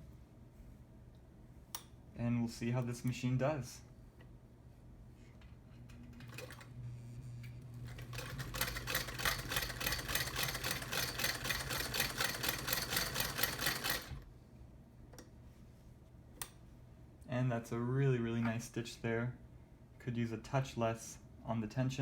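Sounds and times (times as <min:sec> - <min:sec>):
sewing machine stitching clatter: 0:06.0 - 0:06.7, 0:07.9 - 0:14.2.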